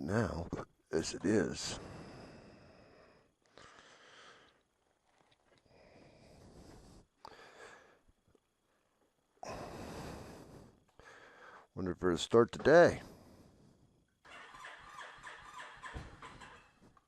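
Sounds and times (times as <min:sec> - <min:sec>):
faint breaths: 0:01.3 - 0:11.9, 0:12.7 - 0:14.1.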